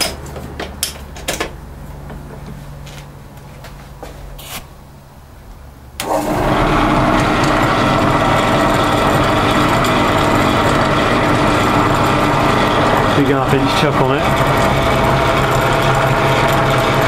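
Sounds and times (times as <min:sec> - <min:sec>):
pillar drill running: 0:06.0 - 0:17.0.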